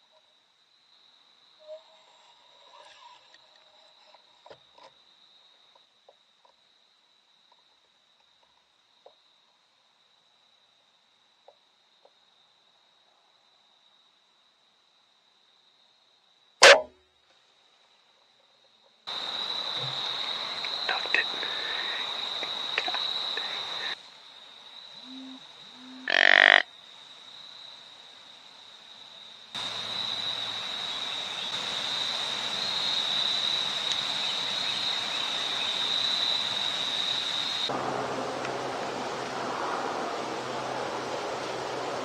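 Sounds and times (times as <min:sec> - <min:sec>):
loud short frog call: 0:16.6 - 0:16.9, 0:25.0 - 0:26.7
frogs calling in chorus: 0:19.1 - 0:24.0, 0:25.0 - 0:26.7
hiss: 0:19.2 - 0:24.1.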